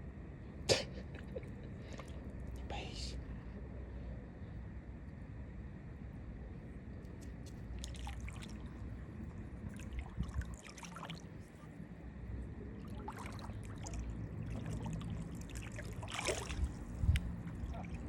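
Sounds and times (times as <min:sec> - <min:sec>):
steady low rumble: 0:00.0 - 0:18.0
water splashing and trickling: 0:07.2 - 0:11.6, 0:12.8 - 0:18.0.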